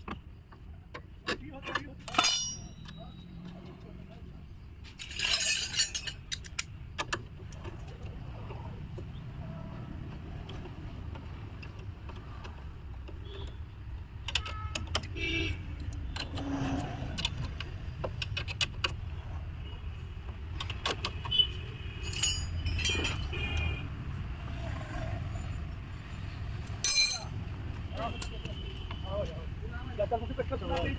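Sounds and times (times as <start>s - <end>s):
metal clinking and jingling: 2.0s - 3.3s, 4.8s - 6.7s, 21.9s - 23.5s, 26.6s - 27.4s.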